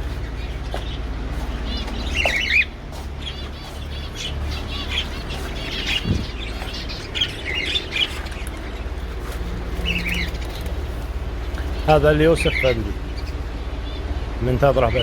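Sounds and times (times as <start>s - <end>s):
small birds chirping and squawking: 0.0s - 15.0s
steady low hum: 0.0s - 15.0s.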